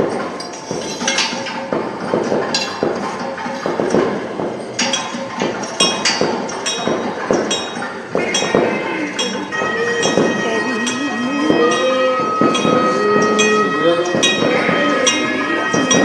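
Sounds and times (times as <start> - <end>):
temple bell clanging: 0.0 - 16.0
steady high tone: 8.2 - 16.0.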